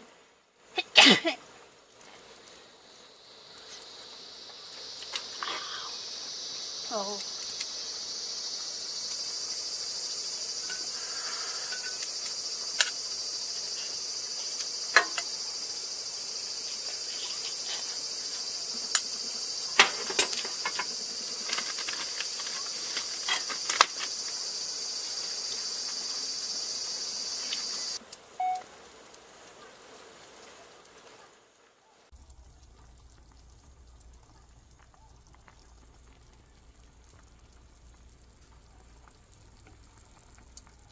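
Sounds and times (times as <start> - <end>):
insect chorus shrilling: 2.8 - 30.6.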